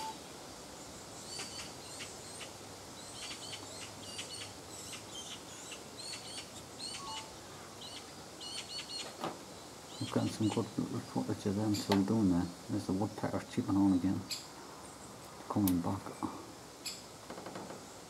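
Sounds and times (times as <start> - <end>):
small birds chirping: 0.0 - 18.0
steady background hiss: 0.0 - 18.0.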